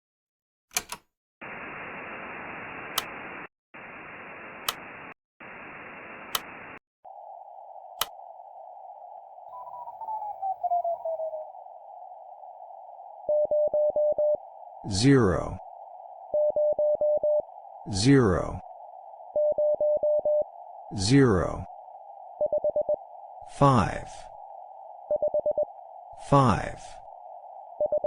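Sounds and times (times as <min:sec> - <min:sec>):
radio static hiss: 0:01.4 - 0:08.6, 0:11.0 - 0:28.0
radio clicks: 0:02.5 - 0:03.5, 0:04.2 - 0:05.1, 0:05.7 - 0:06.8, 0:08.0 - 0:08.2
whistling tone gliding down: 0:07.4 - 0:14.4.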